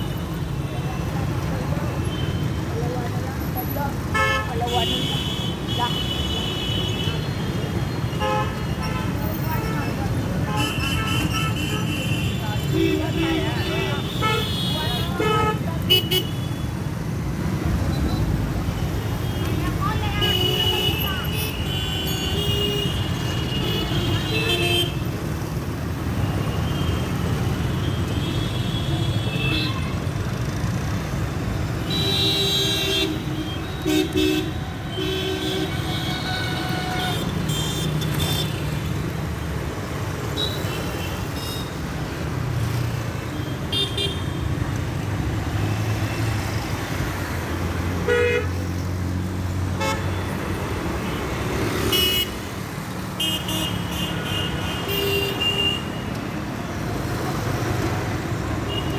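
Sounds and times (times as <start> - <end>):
traffic rumble: 0.0 - 58.9
car horns tooting: 49.8 - 50.4.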